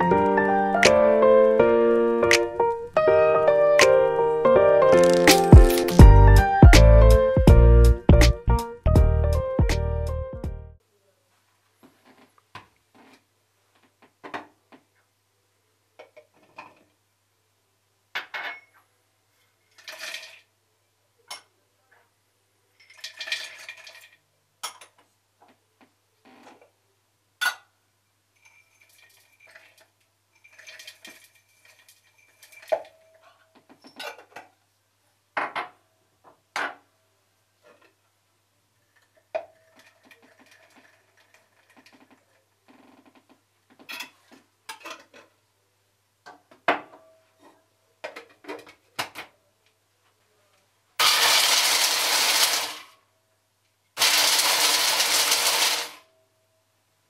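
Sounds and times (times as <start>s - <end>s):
dishes and utensils clinking: 18.2s - 18.9s, 28.3s - 34.5s.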